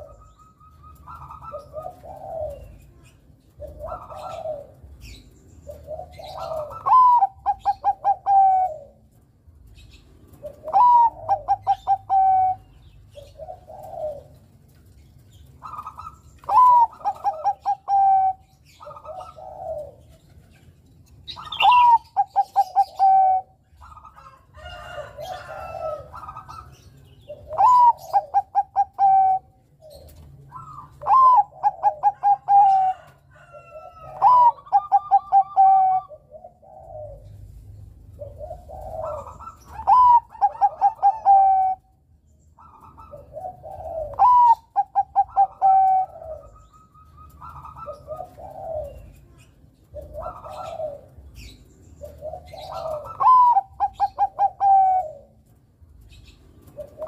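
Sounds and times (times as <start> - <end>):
dove cooing song: 0.0 - 57.0.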